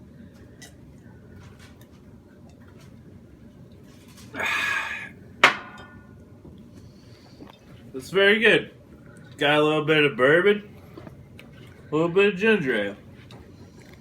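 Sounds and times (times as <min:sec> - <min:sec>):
loud breathy sound: 0:04.4 - 0:05.2.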